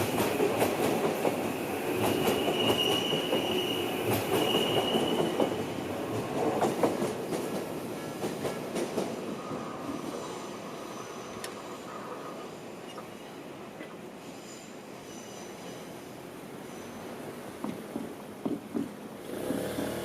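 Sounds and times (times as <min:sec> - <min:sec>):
train wheels squealing: 0:01.8 - 0:05.6, 0:09.4 - 0:13.5, 0:14.2 - 0:17.2
train wheels clicking over rail joints: 0:17.6 - 0:20.0.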